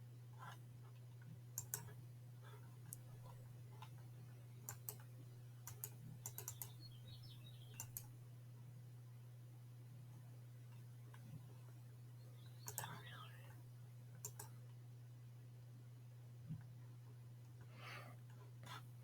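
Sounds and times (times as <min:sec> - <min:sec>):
steady low hum: 0:00.1 - 0:19.0
keyboard and mouse clicks: 0:01.6 - 0:02.0, 0:04.7 - 0:06.8, 0:07.8 - 0:08.1, 0:12.6 - 0:13.1, 0:14.2 - 0:14.5.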